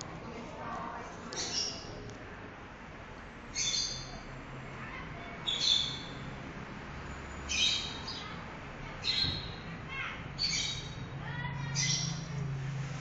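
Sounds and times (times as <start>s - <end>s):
low background hum: 0.0s - 13.0s
high bird chirps: 3.5s - 4.3s, 5.4s - 6.3s, 7.2s - 8.4s, 9.0s - 9.7s, 10.4s - 12.3s.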